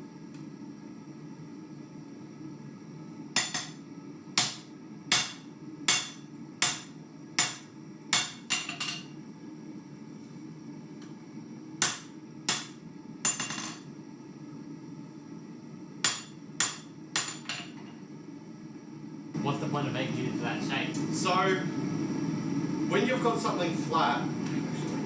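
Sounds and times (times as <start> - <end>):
hammer striking steel on anvil: 3.4 - 3.8, 4.4 - 9.1, 11.8 - 13.9, 16.0 - 17.8.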